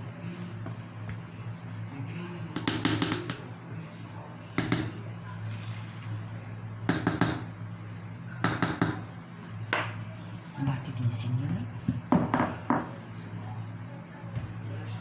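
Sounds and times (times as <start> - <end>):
steady low hum: 0.0 - 15.0
cake pan knocking on counter: 6.9 - 7.5, 11.9 - 12.8.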